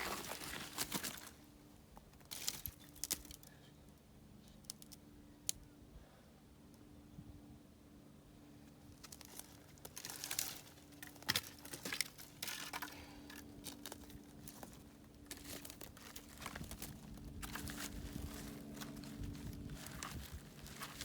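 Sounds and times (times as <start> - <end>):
dry leaves rustling and crackling: 0.0 - 1.4, 2.2 - 3.5, 9.0 - 21.0
faint low hum: 0.0 - 21.0.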